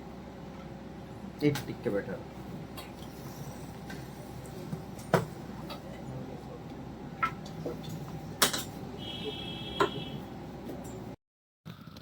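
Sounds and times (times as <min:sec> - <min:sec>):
steady low hum: 0:00.0 - 0:11.2
brief high tone: 0:09.0 - 0:10.2.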